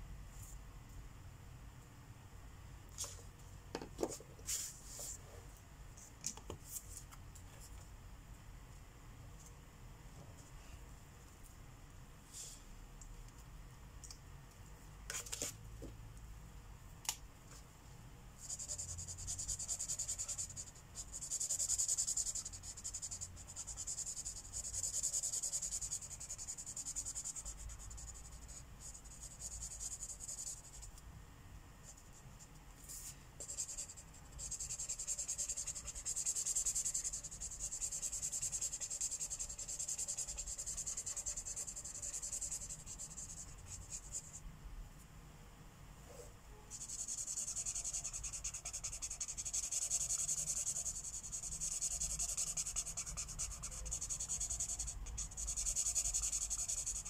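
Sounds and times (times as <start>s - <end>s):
marker rubbing on paper: 18.4s - 30.9s, 33.0s - 44.4s, 46.7s - 57.0s.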